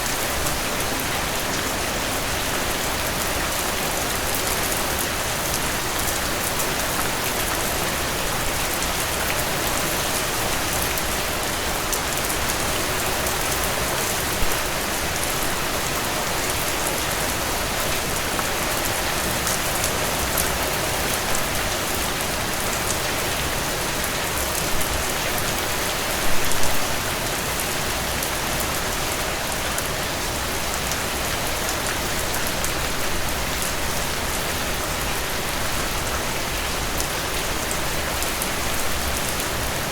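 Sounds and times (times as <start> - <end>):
heavy rain pattering: 0.0 - 39.9.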